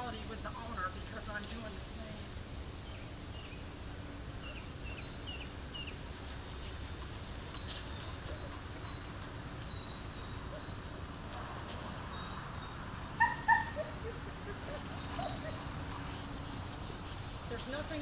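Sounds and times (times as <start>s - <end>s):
bird chirps: 2.8s - 6.9s, 7.6s - 11.0s, 12.1s - 18.0s.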